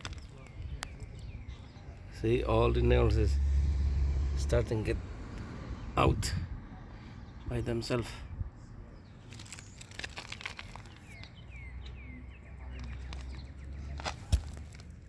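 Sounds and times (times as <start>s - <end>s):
bird chirping: 0.0s - 3.1s, 7.2s - 13.9s.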